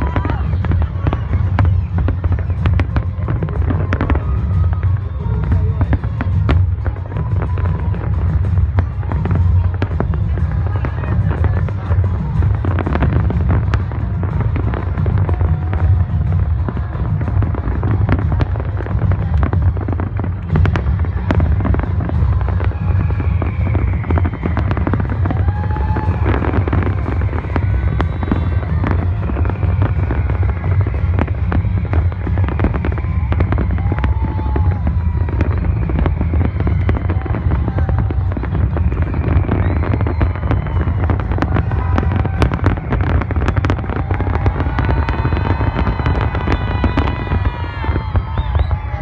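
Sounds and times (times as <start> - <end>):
fireworks bangs and crackles: 0.0 - 49.0.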